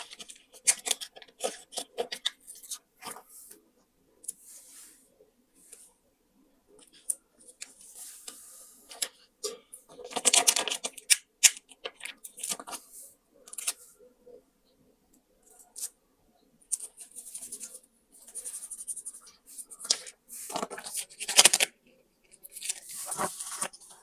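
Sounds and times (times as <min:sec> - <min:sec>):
paper rustling and crinkling: 0:19.6 - 0:21.7, 0:22.3 - 0:24.0.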